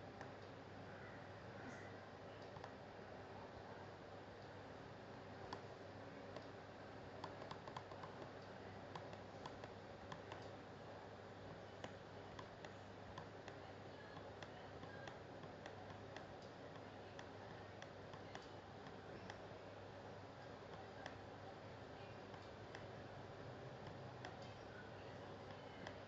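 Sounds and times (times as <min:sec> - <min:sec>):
low steady hum: 0:00.0 - 0:26.0
computer clicking: 0:02.3 - 0:02.8, 0:07.2 - 0:10.6, 0:11.4 - 0:19.5, 0:20.4 - 0:23.2, 0:23.8 - 0:26.0.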